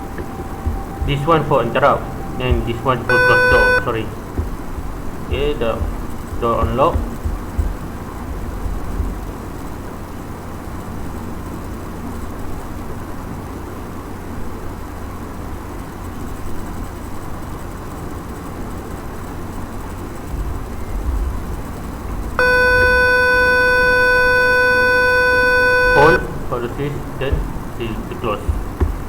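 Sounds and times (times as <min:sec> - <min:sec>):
electronic buzzer tone: 0:00.0 - 0:07.9, 0:22.4 - 0:29.0
low background rumble: 0:00.0 - 0:13.8, 0:14.4 - 0:29.0.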